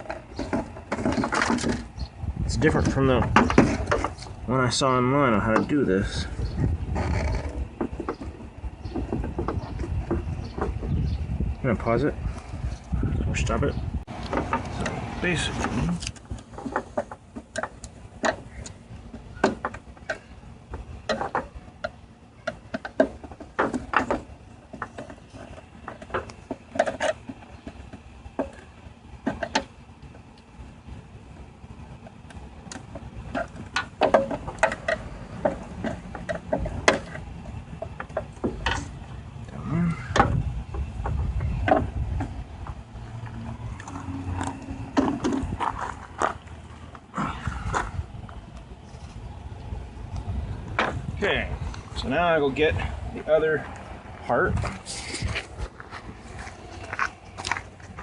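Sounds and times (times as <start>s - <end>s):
car parts and tools clicking: 0.0s - 13.0s, 14.0s - 52.0s, 53.3s - 58.0s
low steady rumble: 0.0s - 58.0s.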